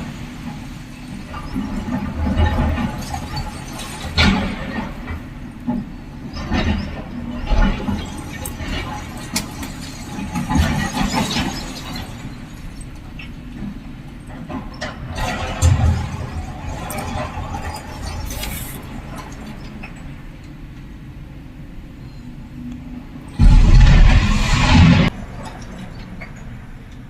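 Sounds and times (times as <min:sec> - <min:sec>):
excavator engine rumbling: 0:16.0 - 0:26.1.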